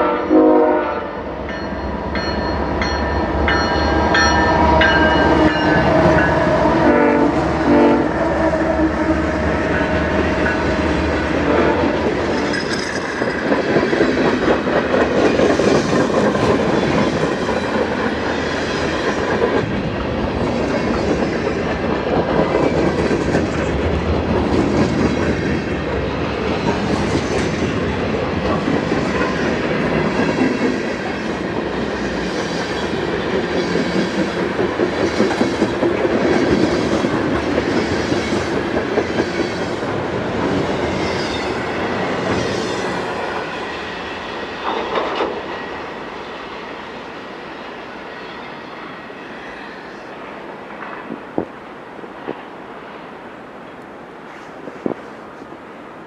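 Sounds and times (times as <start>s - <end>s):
freight train wheels clattering: 9.3s - 45.8s.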